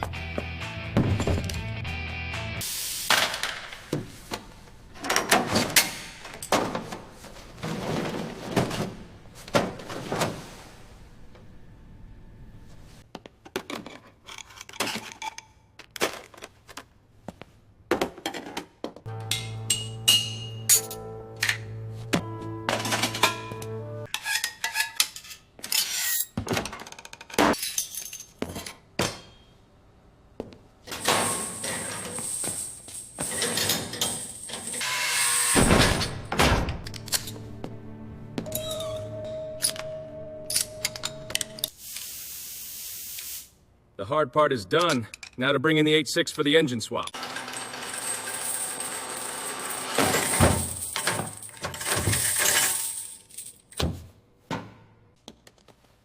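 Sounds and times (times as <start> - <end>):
background music: 0.0 - 2.6, 19.1 - 24.1, 36.1 - 41.7.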